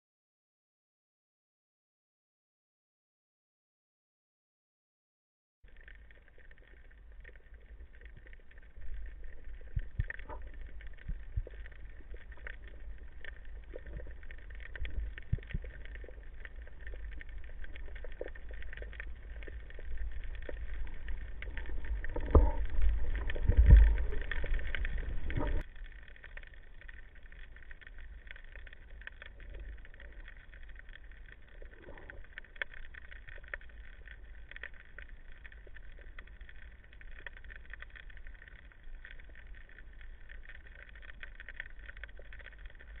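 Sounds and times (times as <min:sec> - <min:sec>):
clicks and knocks underwater: 0:05.7 - 0:43.0
diver moving underwater: 0:05.7 - 0:43.0
underwater rumble: 0:05.7 - 0:43.0
underwater thumping: 0:08.0 - 0:25.6.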